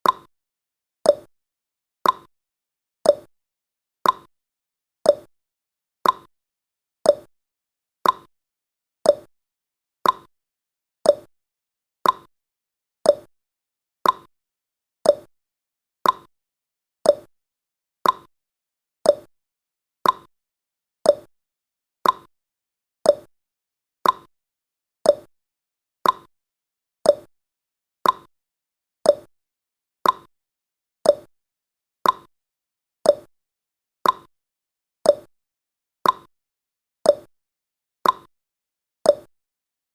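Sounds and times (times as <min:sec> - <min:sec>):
clock ticking: 0:02.0 - 0:02.3, 0:04.0 - 0:04.3, 0:06.0 - 0:06.3, 0:08.0 - 0:08.3, 0:10.0 - 0:10.3, 0:12.0 - 0:12.3, 0:14.0 - 0:14.3, 0:15.1 - 0:15.3, 0:16.0 - 0:16.3, 0:17.1 - 0:17.3, 0:18.0 - 0:18.3, 0:19.1 - 0:19.3, 0:20.0 - 0:20.3, 0:21.1 - 0:21.3, 0:22.0 - 0:22.3, 0:24.0 - 0:24.3, 0:26.0 - 0:26.3, 0:28.0 - 0:28.3, 0:29.1 - 0:29.3, 0:30.0 - 0:30.3, 0:31.1 - 0:31.3, 0:32.0 - 0:32.3, 0:33.1 - 0:33.3, 0:34.0 - 0:34.3, 0:35.1 - 0:35.3, 0:36.0 - 0:36.3, 0:38.0 - 0:38.3, 0:39.1 - 0:39.3.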